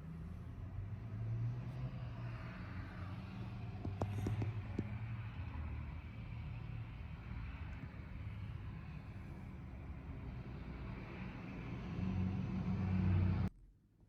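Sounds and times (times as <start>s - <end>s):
low steady rumble: 0.0s - 13.9s.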